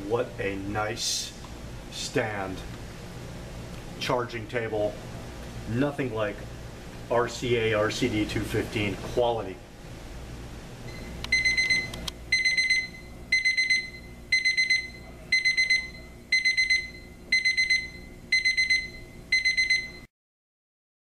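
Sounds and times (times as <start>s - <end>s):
alarm clock beeping: 11.3s - 20.1s.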